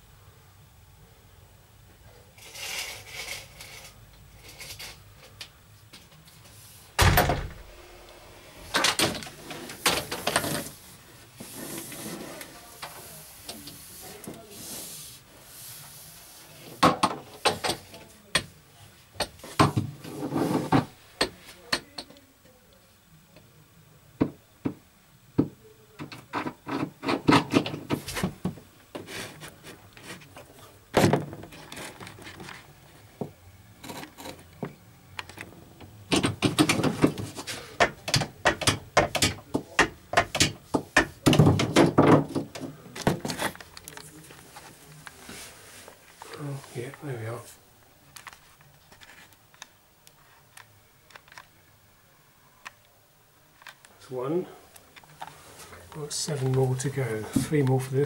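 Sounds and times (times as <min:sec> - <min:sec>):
knocks and clicks on fittings: 0:37.8 - 0:42.7.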